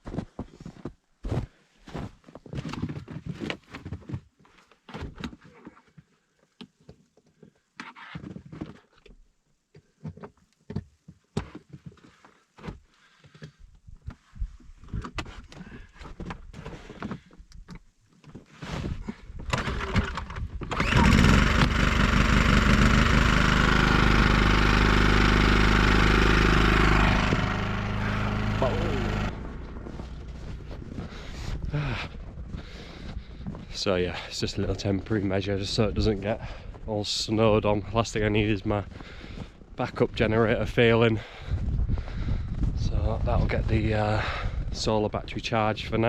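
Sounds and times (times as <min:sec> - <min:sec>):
petrol generator running: 0:19.5 - 0:34.3.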